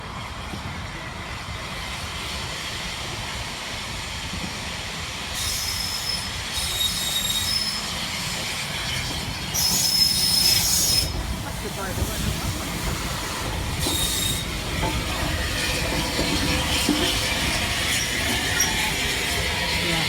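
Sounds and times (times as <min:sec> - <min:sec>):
train rumbling: 0:00.0 - 0:20.0
train brakes squealing: 0:05.2 - 0:20.0.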